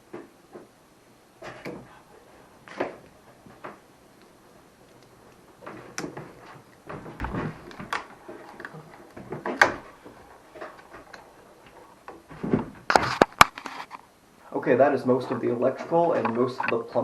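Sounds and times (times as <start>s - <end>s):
construction knocks and clatters: 5.6s - 13.4s.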